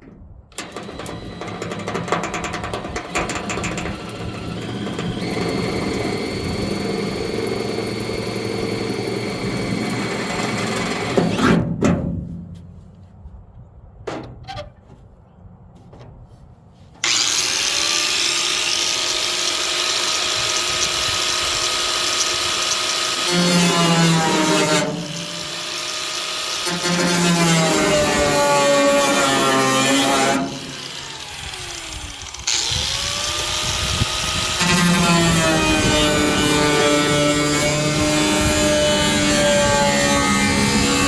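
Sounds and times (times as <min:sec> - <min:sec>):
sharp clicks and knocks: 0:00.0 - 0:06.3, 0:14.0 - 0:15.1
power tool running: 0:00.5 - 0:11.5, 0:17.0 - 0:41.0
high-pitched grinder: 0:00.6 - 0:11.1, 0:17.0 - 0:41.0.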